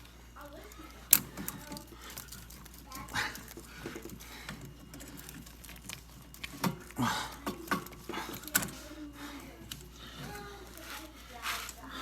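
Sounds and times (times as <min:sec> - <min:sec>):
hand tools knocking on metal fittings: 0:01.2 - 0:08.9.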